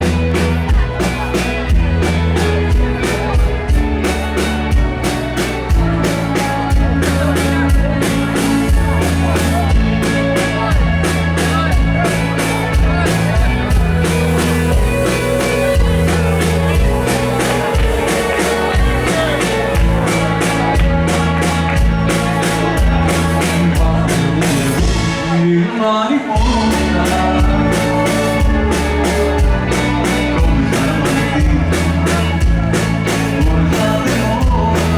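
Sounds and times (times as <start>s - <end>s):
live rock band playing: 0.0s - 34.9s.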